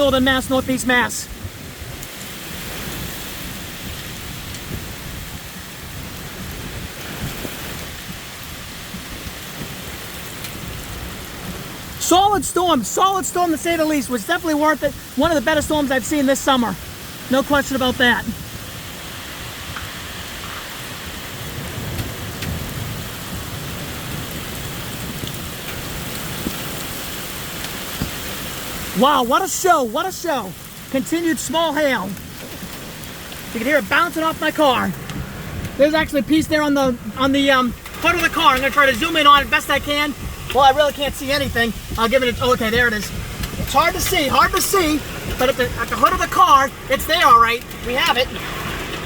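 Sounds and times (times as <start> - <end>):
hail ticking: 0.0 - 49.0
hiss of heavy rain: 0.0 - 49.0
low gusty rumble: 0.0 - 49.0
low rumble of thunder: 18.3 - 29.0, 34.4 - 47.0.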